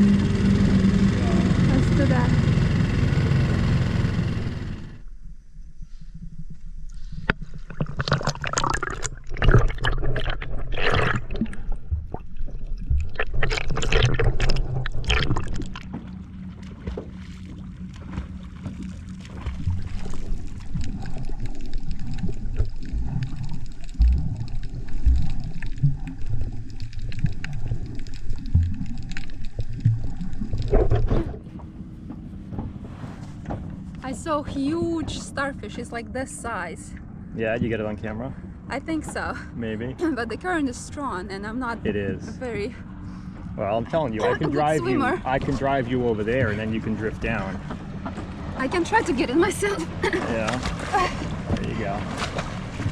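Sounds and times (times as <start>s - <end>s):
water splashing and gurgling: 6.2s - 31.8s, 43.6s - 52.9s.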